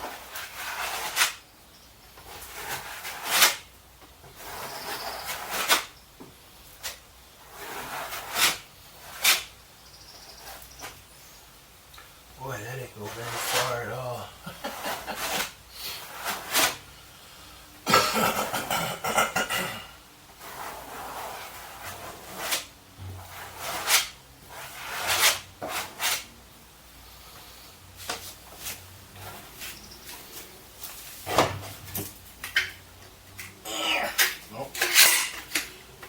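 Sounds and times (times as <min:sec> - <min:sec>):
rough scraping: 0:00.0 - 0:01.4, 0:02.2 - 0:06.0, 0:06.7 - 0:09.6, 0:12.4 - 0:16.9, 0:20.4 - 0:26.4, 0:27.5 - 0:36.0.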